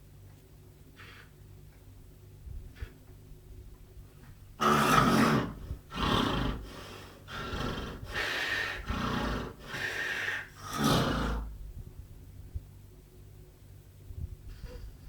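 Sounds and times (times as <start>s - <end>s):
loud snoring: 4.6s - 6.7s, 7.3s - 11.5s.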